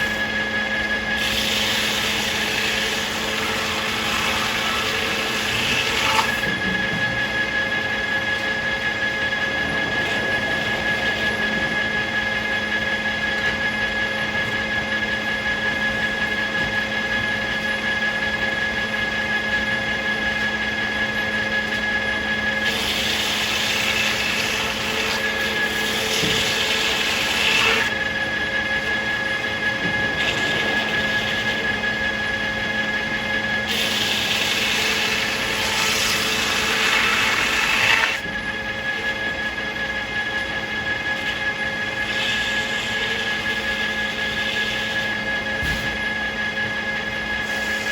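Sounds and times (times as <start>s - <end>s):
circular saw whine: 0.0s - 47.9s
low machine hum: 0.0s - 47.9s
rough sawing noise: 1.1s - 13.4s, 22.6s - 28.0s, 29.6s - 38.2s.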